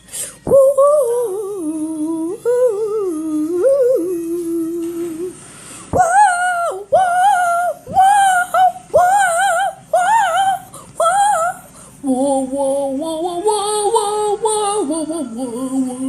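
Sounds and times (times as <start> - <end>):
person humming: 6.0 - 16.0.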